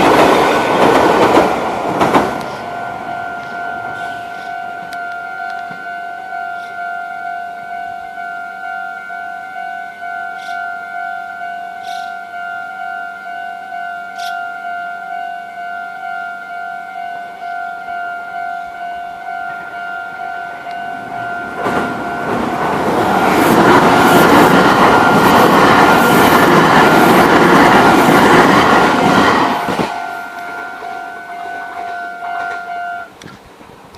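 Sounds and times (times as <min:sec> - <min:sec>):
wheels clacking over rail joints: 0:00.0 - 0:05.8, 0:20.7 - 0:33.8
train passing with loud rumble: 0:00.0 - 0:08.2, 0:17.0 - 0:33.9.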